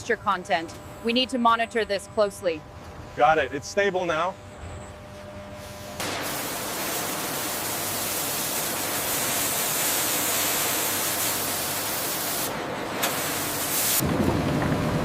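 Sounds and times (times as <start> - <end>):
factory machinery rushing hiss: 5.7 - 14.2.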